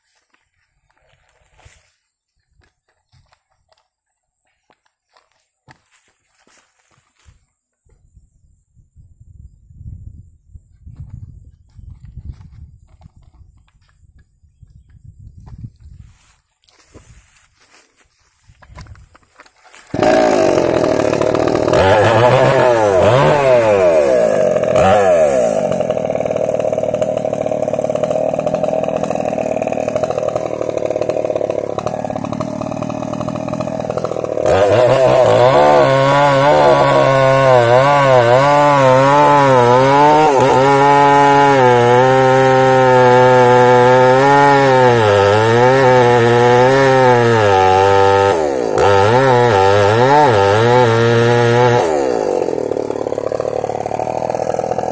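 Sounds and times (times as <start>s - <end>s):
chainsaw cutting tree trunk: 18.6s - 54.9s
chainsaw revving: 19.7s - 54.9s.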